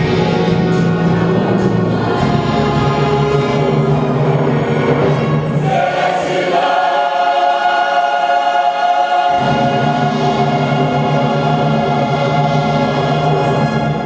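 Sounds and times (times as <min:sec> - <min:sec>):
orchestra playing: 0:00.0 - 0:06.8, 0:09.3 - 0:14.0
church choir singing: 0:00.0 - 0:14.0.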